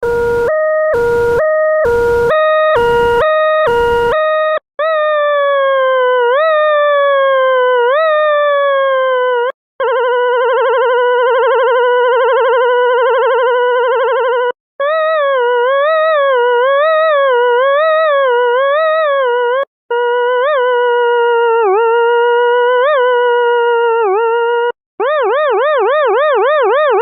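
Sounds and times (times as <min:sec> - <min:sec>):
electronic siren sound effect: 0:00.0 - 0:04.6, 0:25.0 - 0:27.0.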